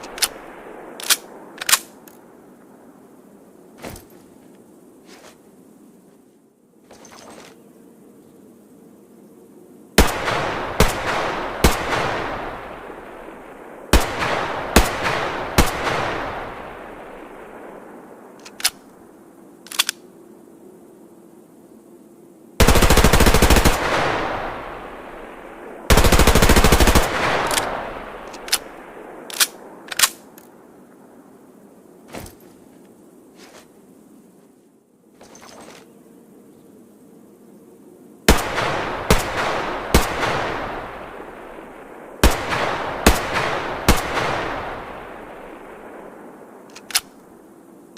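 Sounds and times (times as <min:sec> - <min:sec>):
sharp clicks: 0:18.4 - 0:18.9, 0:19.6 - 0:20.0, 0:27.4 - 0:30.5, 0:46.7 - 0:47.2.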